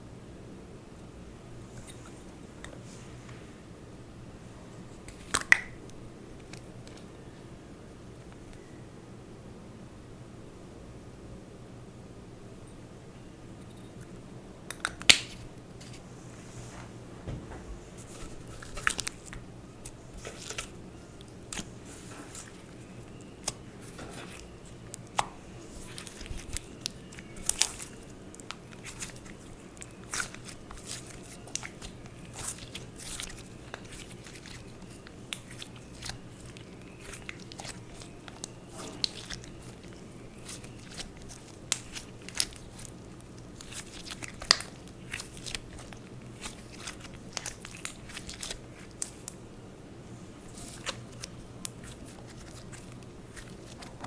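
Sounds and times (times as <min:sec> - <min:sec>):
faint low hum: 0:00.0 - 0:54.0
sticky slime clicks and pops: 0:05.3 - 0:05.8, 0:14.7 - 0:15.4.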